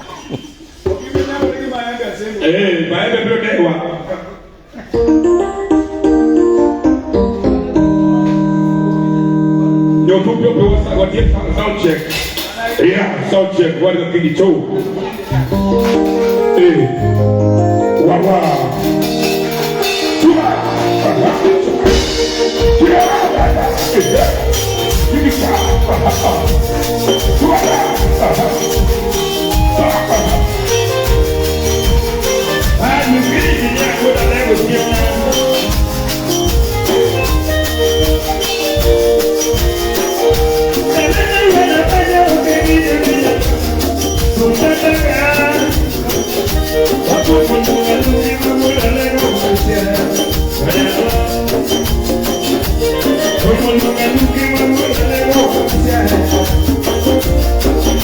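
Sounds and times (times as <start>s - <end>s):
bass and percussion beat: 0.0s - 1.8s, 10.6s - 13.0s, 14.7s - 58.0s
live band through speakers: 0.0s - 58.0s
person singing: 15.0s - 58.0s.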